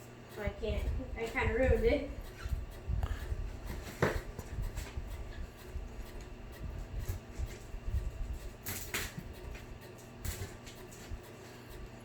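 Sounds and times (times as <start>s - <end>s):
scissors cutting packing tape: 8.6s - 9.4s.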